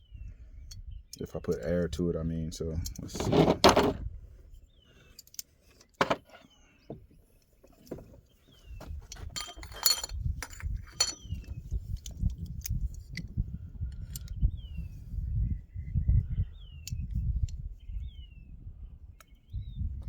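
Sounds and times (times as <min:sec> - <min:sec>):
bird chirping: 0:04.5 - 0:09.2, 0:10.8 - 0:12.2, 0:14.2 - 0:19.9
small metal parts clinking: 0:09.0 - 0:13.3.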